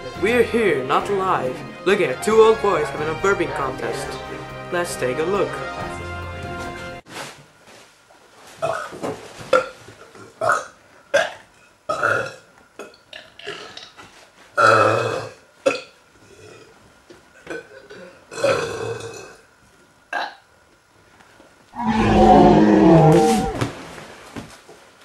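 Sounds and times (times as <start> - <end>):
people belching: 17.4 - 19.4.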